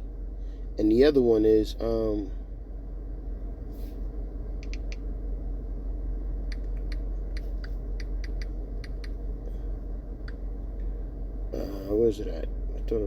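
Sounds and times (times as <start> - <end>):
low hum: 0.0 - 13.0
light clicks: 4.6 - 5.0, 6.5 - 9.2.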